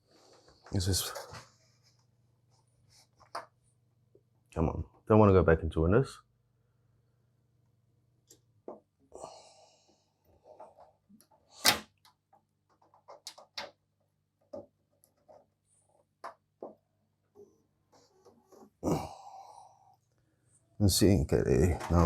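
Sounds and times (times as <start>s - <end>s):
objects handled on a desk: 10.4s - 13.8s, 14.4s - 16.8s.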